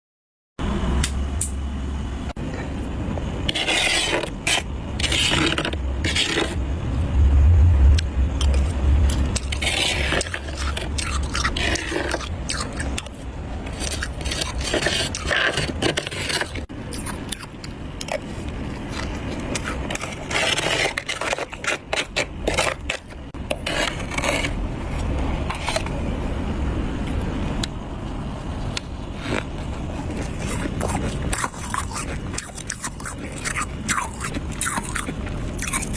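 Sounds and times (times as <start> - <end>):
steady low hum: 0.6 - 35.9
metal spoon scraping frost: 3.4 - 6.6, 8.4 - 24.6, 29.2 - 35.9.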